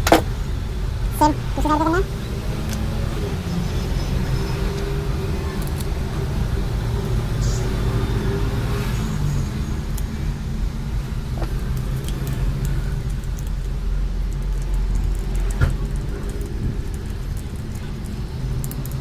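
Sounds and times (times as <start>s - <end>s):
low mechanical hum: 0.0s - 19.0s
small parts clicking: 11.4s - 19.0s.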